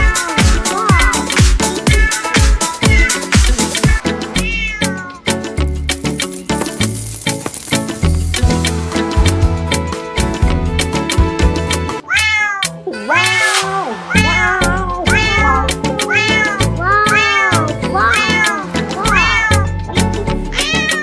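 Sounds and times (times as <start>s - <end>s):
dance music beat: 0.0s - 4.2s
cat meows melody: 0.0s - 5.4s, 12.0s - 21.0s.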